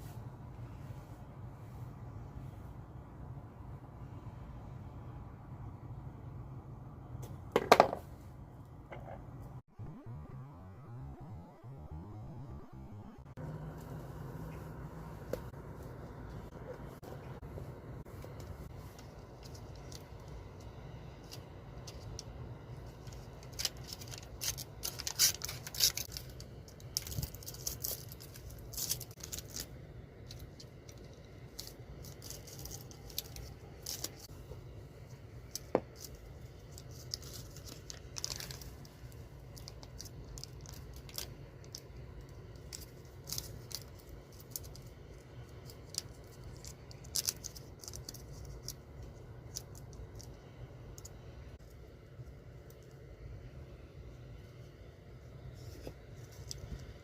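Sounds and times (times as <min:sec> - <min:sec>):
low steady hum: 0:00.0 - 0:57.0
small objects clicking and crinkling: 0:23.0 - 0:34.3, 0:35.4 - 0:51.8.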